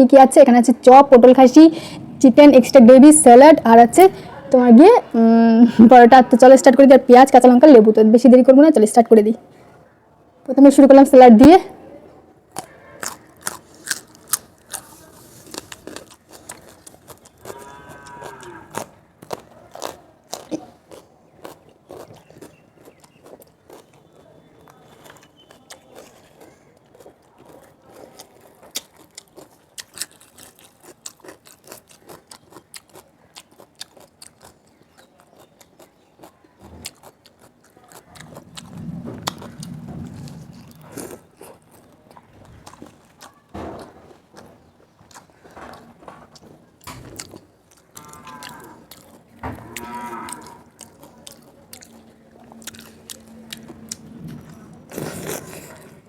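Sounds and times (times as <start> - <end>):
crisp bites of vegetables: 12.5 - 44.5
chewing: 12.5 - 56.0.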